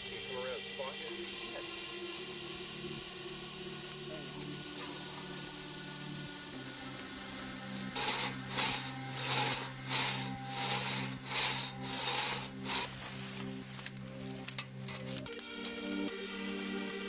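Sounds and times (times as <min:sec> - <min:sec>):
background music: 0:00.0 - 0:17.0
hand saw cutting wood: 0:07.3 - 0:16.1.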